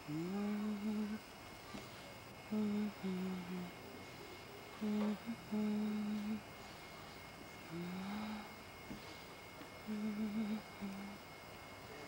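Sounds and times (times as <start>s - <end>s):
person humming: 0.0s - 1.2s, 2.5s - 3.7s, 4.8s - 6.4s, 7.7s - 8.6s, 9.8s - 11.2s.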